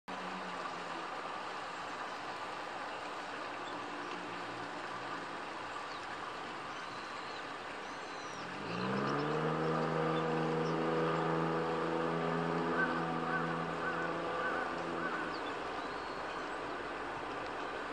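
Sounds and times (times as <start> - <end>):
traffic hum: 0.1 - 17.9
engine droning: 6.4 - 17.9.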